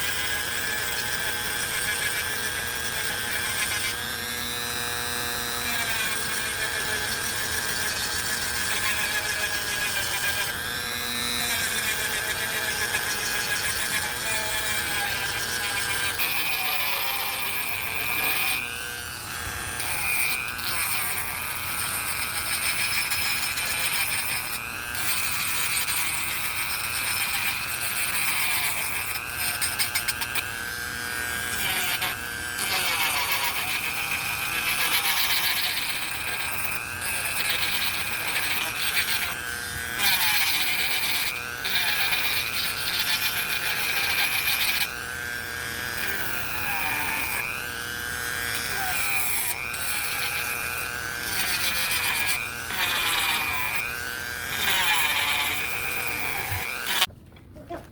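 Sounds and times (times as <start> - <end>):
rotary tool sanding wood: 0.0 - 57.1.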